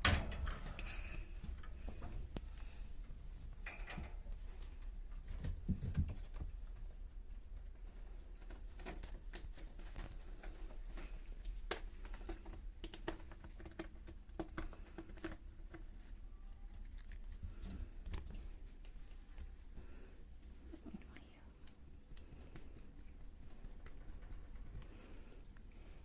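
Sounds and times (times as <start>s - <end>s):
faint low hum: 0.0s - 26.0s.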